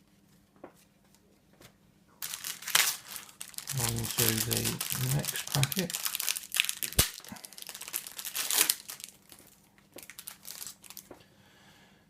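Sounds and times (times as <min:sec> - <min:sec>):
card packet wrapper tearing: 0:02.2 - 0:11.1.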